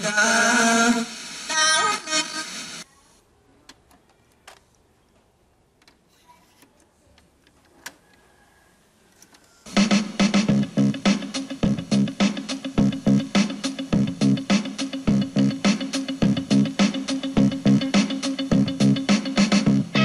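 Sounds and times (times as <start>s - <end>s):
music with drums: 9.7s - 20.0s.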